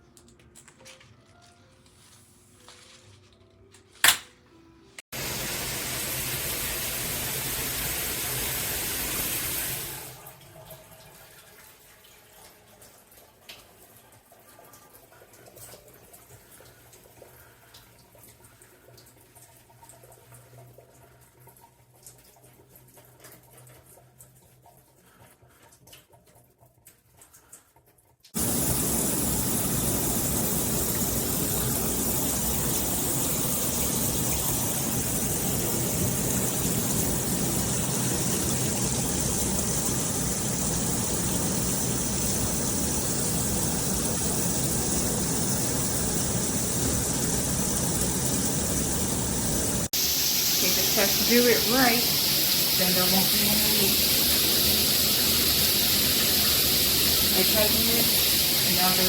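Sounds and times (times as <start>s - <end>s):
shower water spraying: 5.1s - 10.2s, 28.4s - 59.0s.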